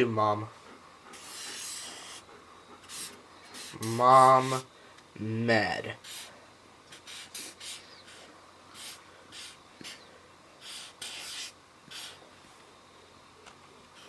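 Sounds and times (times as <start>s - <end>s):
marker drawing on paper: 1.1s - 4.7s, 6.0s - 6.3s, 6.9s - 10.0s, 10.6s - 12.2s.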